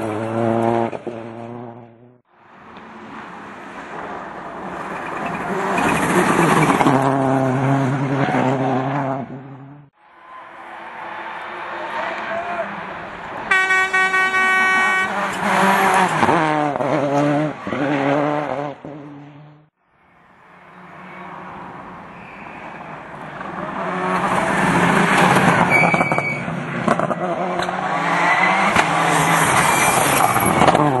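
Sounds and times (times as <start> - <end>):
rally car engine at high revs: 0.0 - 2.2, 5.3 - 9.9, 15.1 - 19.7.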